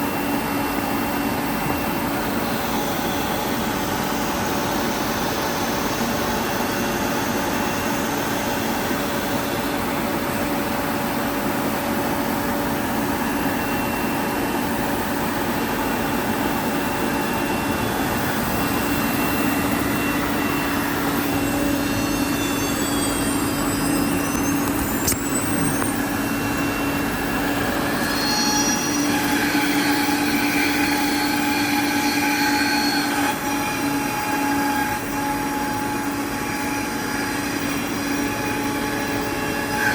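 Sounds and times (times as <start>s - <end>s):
brief gliding whines: 0.0s - 39.9s
cnc router whining: 0.0s - 39.9s.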